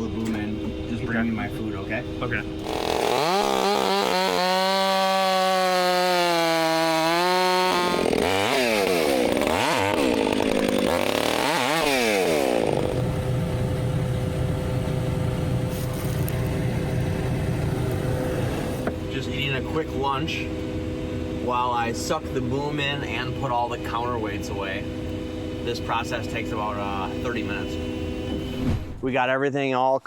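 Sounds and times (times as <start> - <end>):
low engine rumble: 0.0 - 3.0, 12.7 - 28.6
chainsaw cutting wood: 2.6 - 19.0, 24.2 - 28.5.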